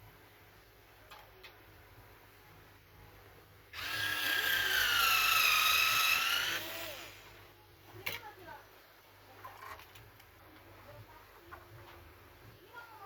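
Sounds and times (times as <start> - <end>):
power drill whining: 3.8 - 7.3.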